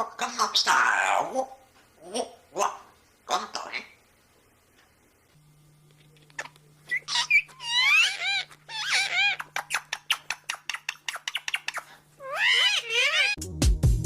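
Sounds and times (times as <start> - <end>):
faint steady hum: 0.0 - 13.4
parrot whistled calls: 6.9 - 13.4.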